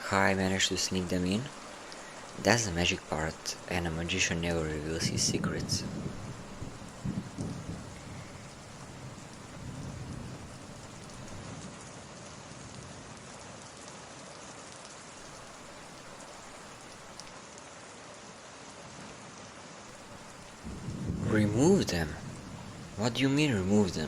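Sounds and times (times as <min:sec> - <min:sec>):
low rumble of thunder: 0:00.0 - 0:11.5, 0:20.0 - 0:24.0
steady rain patter: 0:00.0 - 0:24.0.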